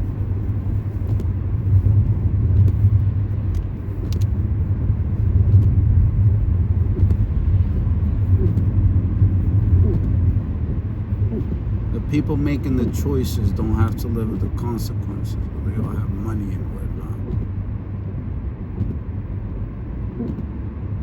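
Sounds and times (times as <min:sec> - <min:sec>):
car driving heard from cabin: 0:00.0 - 0:21.0
faint ticks: 0:01.0 - 0:04.4.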